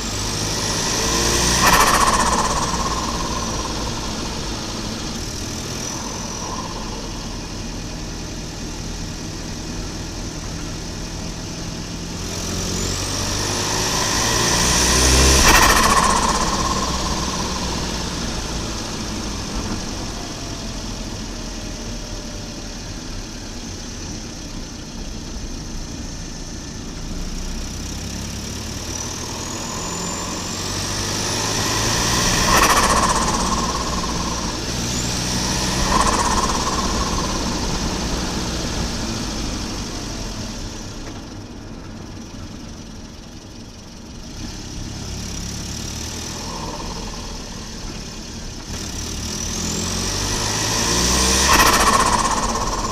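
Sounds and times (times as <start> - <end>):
turbo whistle: 0.0 - 8.7, 12.7 - 20.6, 28.9 - 39.6, 49.7 - 52.9
turbo flutter: 0.0 - 9.3, 12.3 - 21.6, 28.6 - 41.1, 45.6 - 49.2, 49.8 - 52.9
car engine revving: 0.0 - 22.9, 27.6 - 41.2, 44.0 - 52.9.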